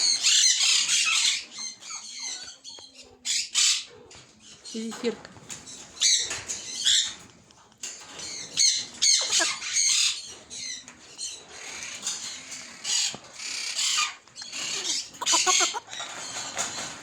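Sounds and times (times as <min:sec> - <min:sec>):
parrots squawking: 0:08.6 - 0:16.8.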